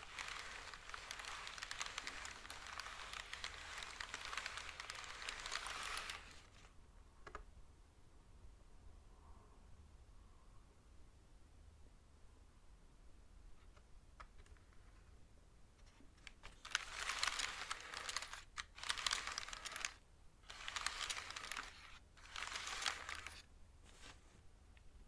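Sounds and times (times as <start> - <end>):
mechanical keyboard typing: 0.0 - 6.5, 16.5 - 23.4.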